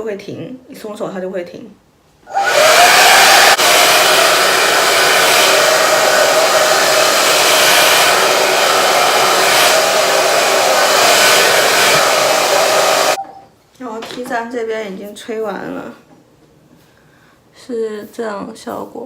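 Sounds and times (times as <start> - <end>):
hair dryer running: 2.3 - 13.2.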